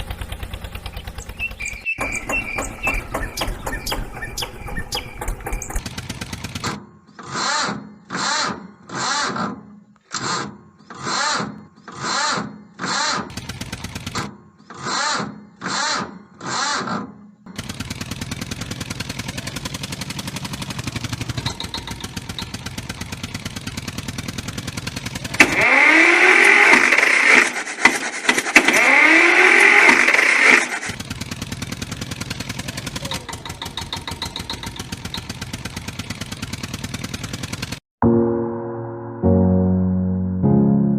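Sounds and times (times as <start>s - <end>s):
tractor engine chugging: 0.0s - 7.2s, 13.3s - 14.3s, 17.5s - 37.8s.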